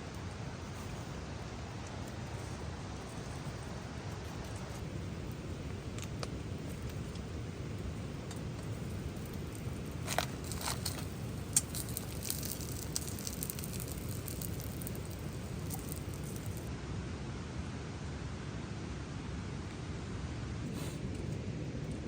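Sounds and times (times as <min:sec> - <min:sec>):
campfire crackling: 0:00.0 - 0:16.7
rain hissing: 0:00.0 - 0:16.7
sharp pops from fire: 0:01.8 - 0:16.7.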